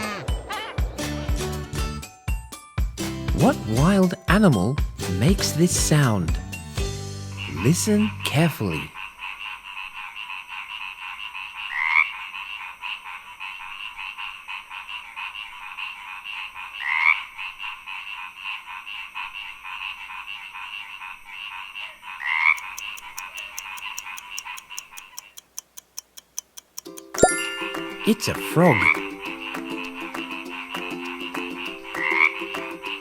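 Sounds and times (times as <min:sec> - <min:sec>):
loud rising frog call: 0:00.0 - 0:01.4
frogs calling in chorus: 0:07.4 - 0:25.6
steady ticking: 0:22.6 - 0:28.2.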